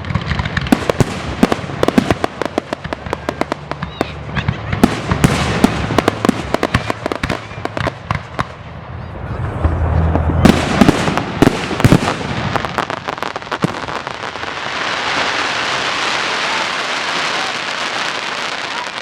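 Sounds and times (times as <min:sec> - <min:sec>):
fireworks crackling: 0:00.0 - 0:19.0
firework shells bursting with bangs: 0:10.1 - 0:19.0.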